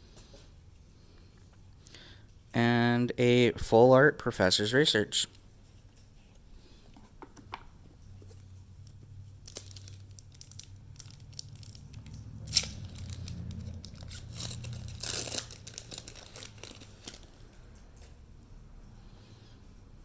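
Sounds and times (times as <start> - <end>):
foil wrapper crinkling: 8.8 - 17.6
wrapper tearing open: 9.4 - 17.5.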